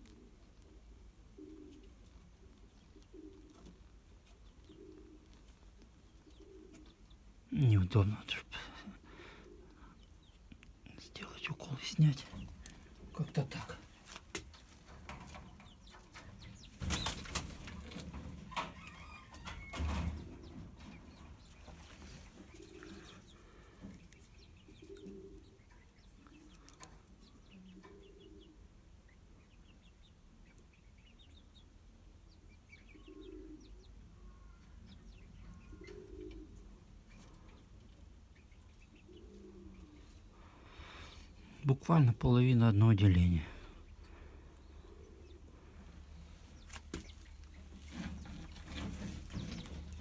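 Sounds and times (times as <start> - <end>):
pigeons cooing: 0.0 - 7.5, 8.3 - 10.5, 11.3 - 29.0, 32.8 - 41.5, 43.4 - 50.0
pigeon wings flapping: 16.8 - 18.1.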